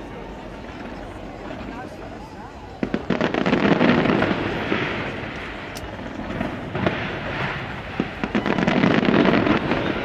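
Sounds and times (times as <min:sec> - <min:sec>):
fireworks crackling: 0:00.0 - 0:10.0
fireworks sharp bangs: 0:02.7 - 0:10.0.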